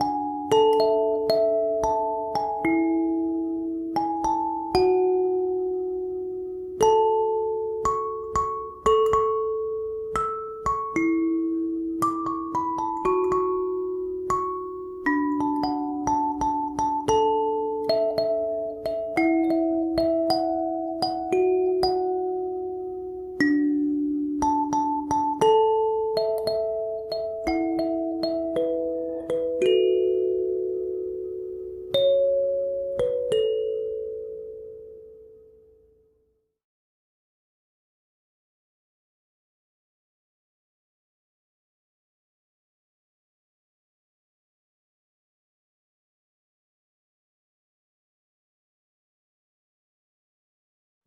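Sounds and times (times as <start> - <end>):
kalimba melody: 0.0 - 35.6.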